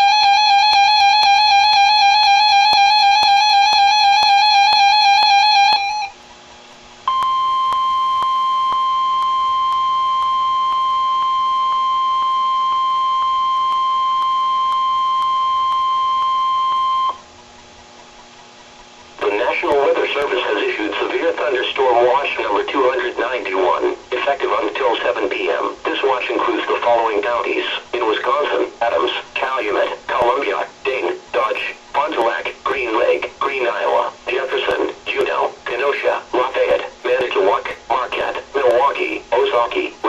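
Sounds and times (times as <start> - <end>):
steady warning alarm beep: 0.0 - 6.2, 7.1 - 17.2
wavering electronic tone: 0.0 - 6.2.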